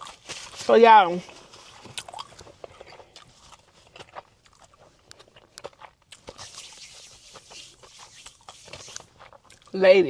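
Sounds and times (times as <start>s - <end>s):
chewing and biting food: 0.0s - 10.0s.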